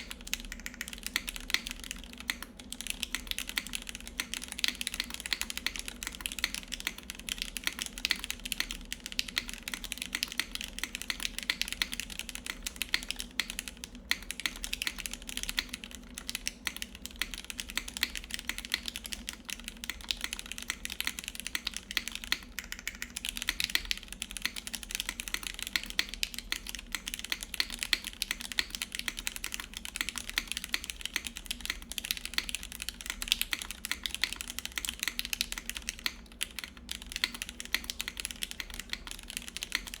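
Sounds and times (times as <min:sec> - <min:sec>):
mechanical keyboard typing: 0:00.0 - 0:40.0.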